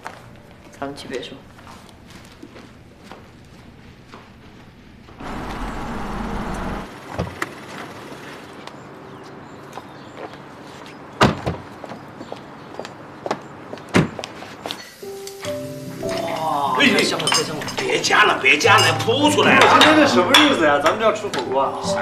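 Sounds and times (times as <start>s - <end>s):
car passing: 5.2s - 7.2s.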